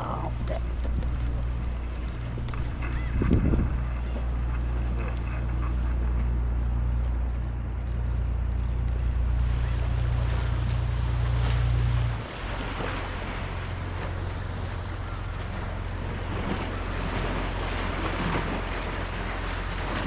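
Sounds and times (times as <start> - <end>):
wind buffeting microphone: 0.0 - 5.1.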